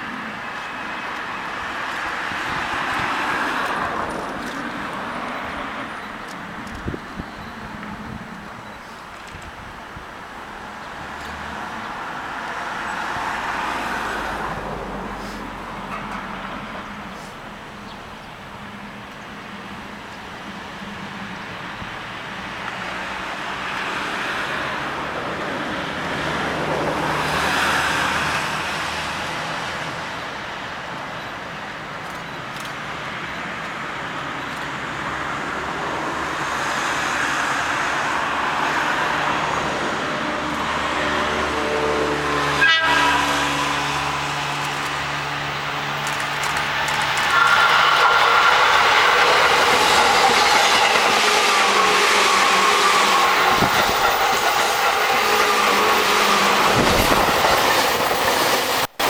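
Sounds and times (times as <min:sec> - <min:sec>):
electric train running: 0:36.4 - 0:59.0
train horn blast: 0:40.1 - 0:44.7, 0:47.3 - 0:57.3.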